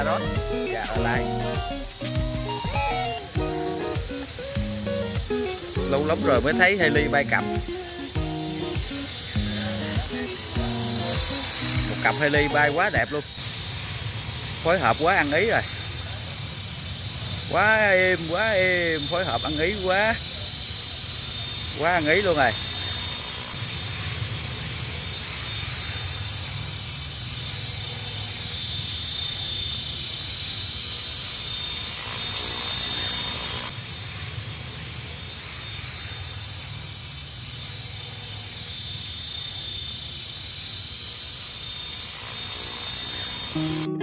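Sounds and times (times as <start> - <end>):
thin high whine: 0.0 - 23.9, 37.7 - 44.0
broad hiss: 0.0 - 28.6
model helicopter rotor drone: 0.0 - 43.9.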